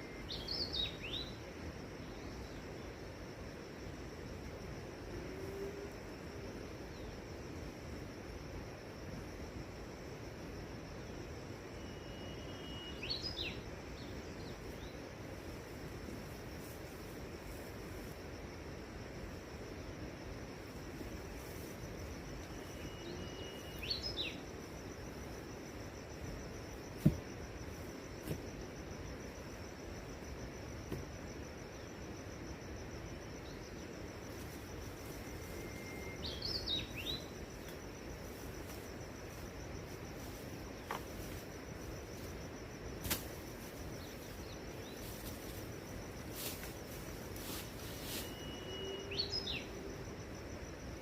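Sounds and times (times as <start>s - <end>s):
high insect drone: 0.0s - 51.0s
steady hiss: 0.0s - 51.0s
bird chirping: 22.7s - 24.4s, 35.6s - 37.3s, 48.3s - 49.7s.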